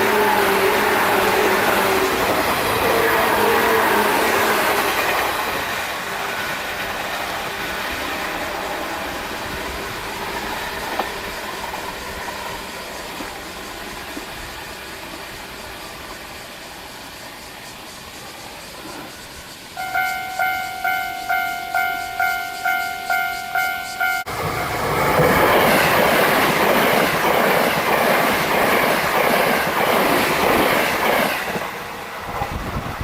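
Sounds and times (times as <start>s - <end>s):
train rumbling: 0.0s - 33.0s
level crossing warning bell: 19.8s - 24.4s.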